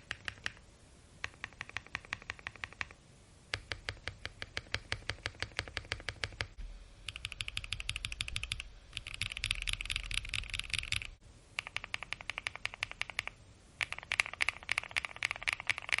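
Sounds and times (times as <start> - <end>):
mechanical keyboard typing bursts: 1.2 - 16.0.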